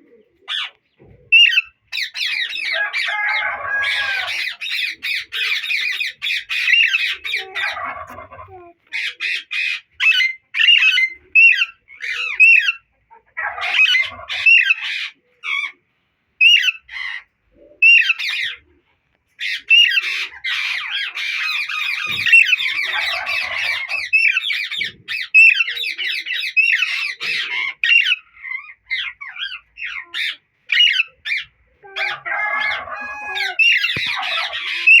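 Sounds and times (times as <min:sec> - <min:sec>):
parakeets squawking: 0:01.4 - 0:08.2, 0:19.4 - 0:35.0.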